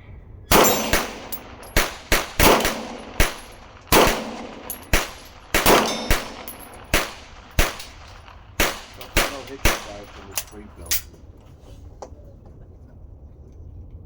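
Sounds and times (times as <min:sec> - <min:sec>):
steel target ringing: 0:00.5 - 0:10.6
handgun shots: 0:00.5 - 0:11.0.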